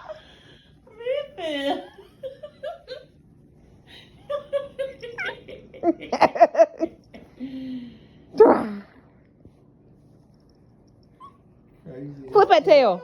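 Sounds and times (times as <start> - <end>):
person laughing: 4.3 - 7.0.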